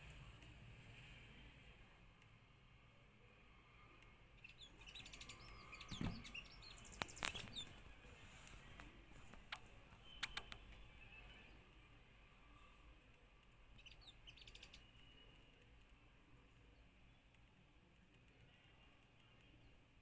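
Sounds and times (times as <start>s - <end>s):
bird chirping: 4.3s - 11.8s, 13.6s - 15.7s.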